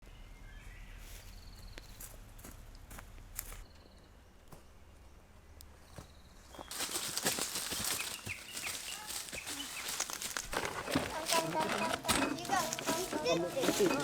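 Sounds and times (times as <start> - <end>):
dense crackling rustle: 6.8 - 14.0.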